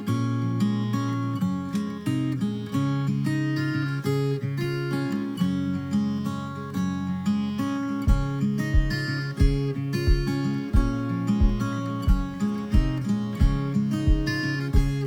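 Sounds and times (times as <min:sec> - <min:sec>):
strummed acoustic guitar music: 0:00.0 - 0:15.0
deep steady beat: 0:08.1 - 0:15.0.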